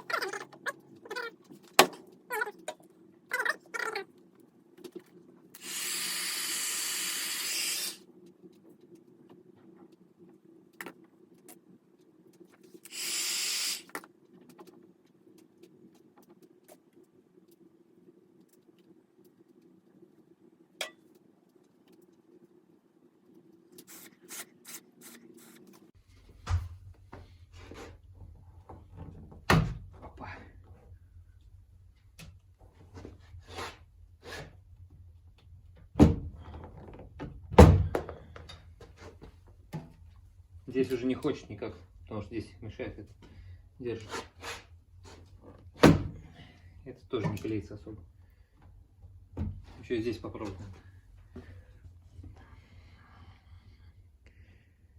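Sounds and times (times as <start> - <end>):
loud hiss: 5.6 - 8.0, 12.9 - 13.9.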